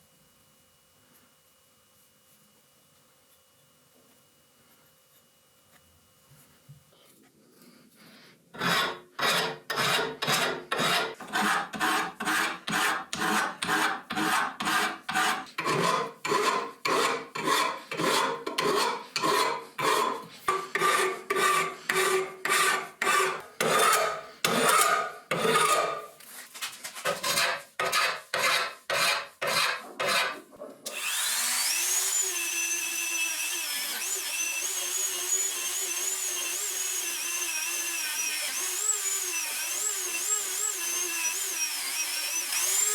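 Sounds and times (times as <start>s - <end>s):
hand abrading strokes on metal: 8.6s - 26.1s
power tool whine: 30.9s - 42.9s.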